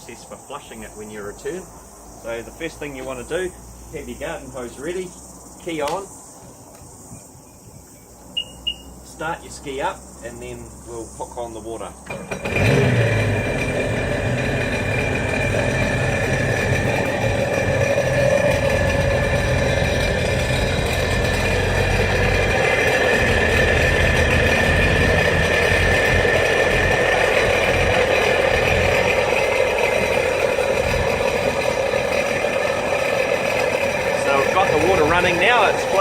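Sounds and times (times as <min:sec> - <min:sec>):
jet ski engine idling: 0:12.1 - 0:36.0.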